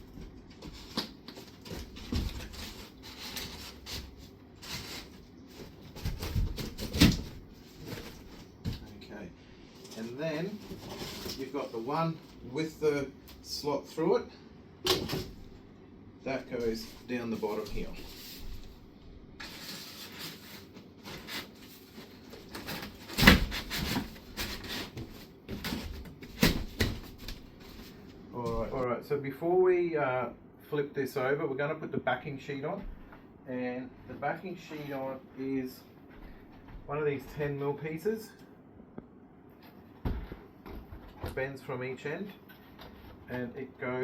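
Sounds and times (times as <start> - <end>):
cardboard rubbing and scraping: 0.6 - 8.5, 9.8 - 12.3, 16.6 - 18.8, 19.4 - 28.8
cardboard scraping on cardboard: 9.9 - 11.8, 19.4 - 28.0.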